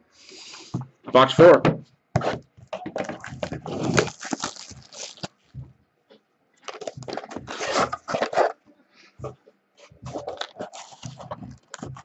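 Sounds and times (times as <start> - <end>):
wrapping and cardboard ripping: 3.1 - 5.4, 6.8 - 8.6, 10.1 - 12.0.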